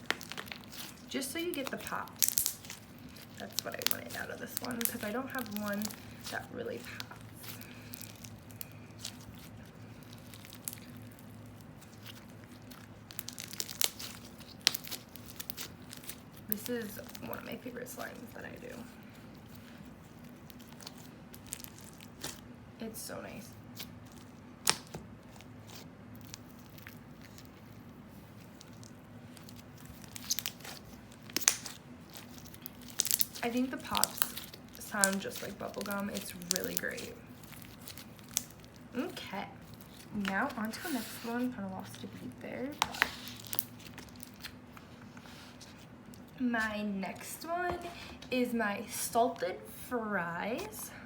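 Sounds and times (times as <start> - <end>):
small pops and crackles: 0.0 - 17.5, 28.6 - 38.9
slime squished by hand: 0.0 - 22.5, 23.5 - 41.4, 42.6 - 46.4.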